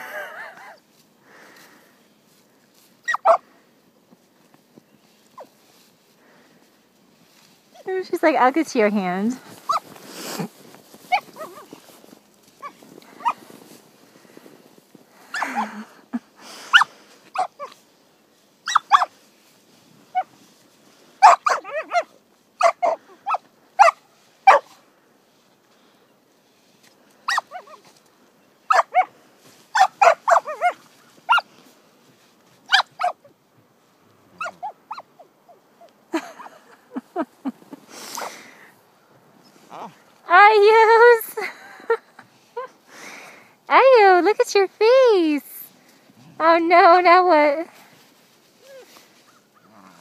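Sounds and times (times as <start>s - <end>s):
puppy yapping: 3.0s - 3.4s, 11.1s - 11.7s, 12.6s - 13.4s, 16.7s - 17.8s, 18.6s - 19.1s, 21.2s - 24.8s, 27.3s - 27.9s, 28.7s - 29.1s, 29.7s - 31.5s, 32.7s - 33.3s, 34.4s - 35.6s.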